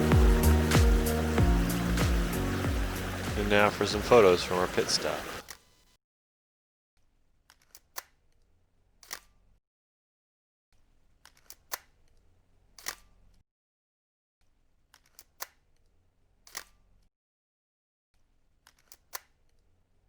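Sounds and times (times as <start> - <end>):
faint hiss: 0.0 - 5.5.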